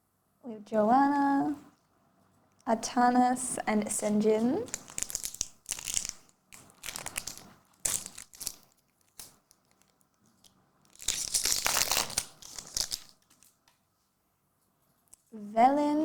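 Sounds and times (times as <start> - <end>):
foil wrapper crinkling and tearing: 4.6 - 13.6.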